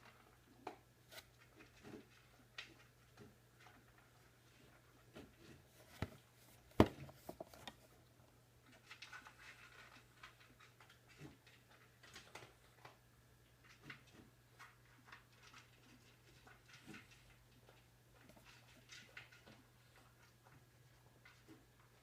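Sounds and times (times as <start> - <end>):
small clicks knocks and scuffs: 0.6 - 8.0.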